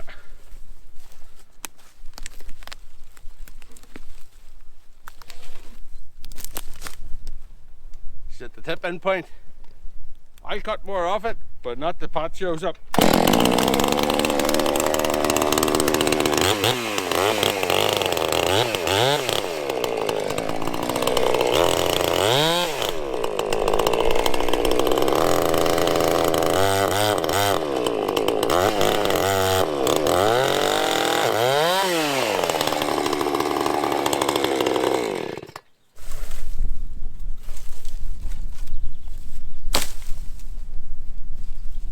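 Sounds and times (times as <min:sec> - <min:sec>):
chainsaw cutting wood: 0:12.9 - 0:35.7.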